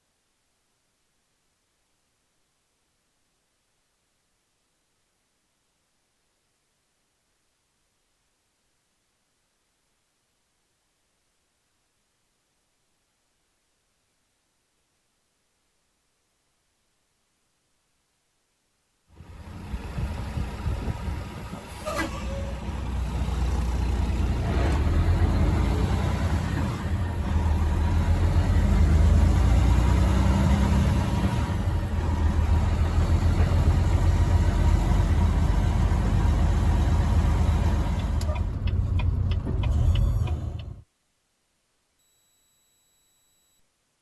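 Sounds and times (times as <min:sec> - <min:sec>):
road noise: 0:19.2 - 0:40.8
truck engine running: 0:19.2 - 0:40.8.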